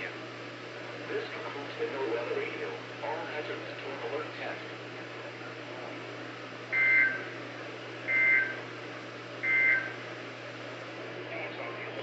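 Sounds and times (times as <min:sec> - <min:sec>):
steady low hum: 0:00.0 - 0:12.0
two-tone data chirps: 0:06.8 - 0:07.2.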